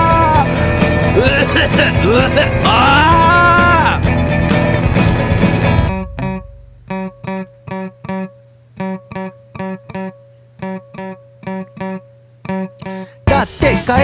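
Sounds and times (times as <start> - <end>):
full band music: 0.0 - 6.2
electric guitar chord stabs: 0.0 - 14.0
held low note: 1.9 - 12.9.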